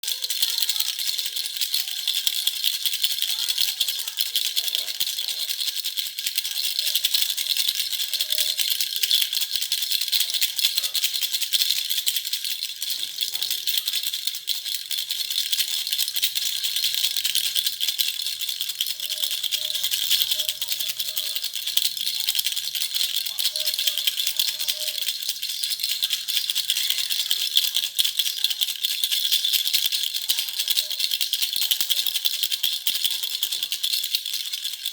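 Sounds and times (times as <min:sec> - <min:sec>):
toy rattle shaking: 0:00.0 - 0:34.9.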